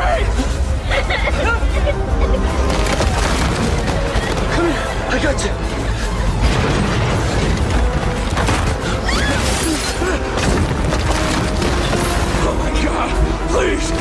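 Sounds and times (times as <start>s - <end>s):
debris crashing and breaking: 2.6s - 5.3s, 6.2s - 12.9s.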